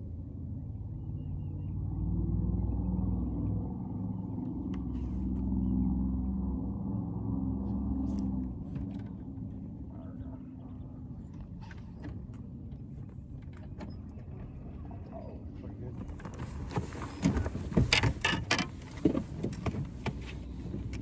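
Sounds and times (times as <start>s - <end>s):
engine droning: 0.0s - 21.0s.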